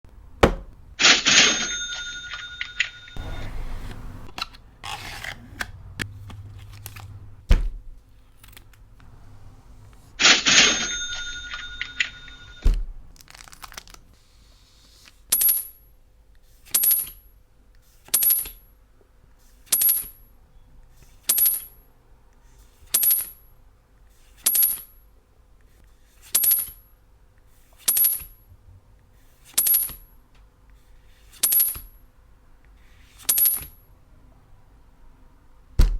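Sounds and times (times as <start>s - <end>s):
bright ringing chime: 1.4s - 3.5s, 10.3s - 12.7s
short swishes ending in high ring: 10.2s - 12.6s.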